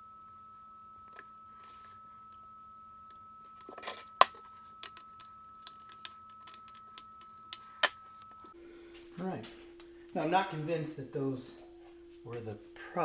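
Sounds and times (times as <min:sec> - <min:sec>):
tools and metal parts clicking: 0:03.6 - 0:08.5.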